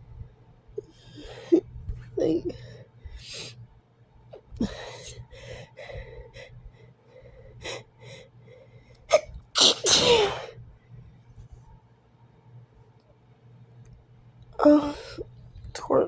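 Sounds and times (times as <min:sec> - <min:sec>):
person sneezing loudly: 0:09.1 - 0:10.5.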